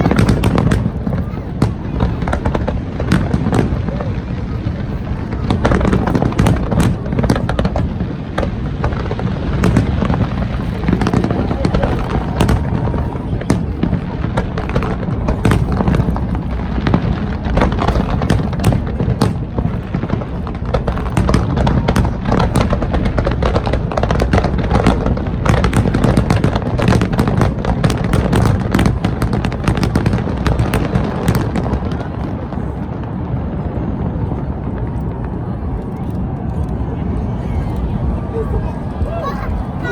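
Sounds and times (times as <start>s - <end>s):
fireworks bangs and crackles: 0.0s - 39.9s.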